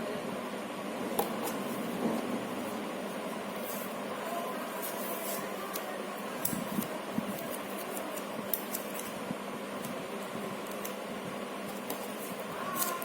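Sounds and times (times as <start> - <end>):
room hum with low tone: 0.0 - 13.0.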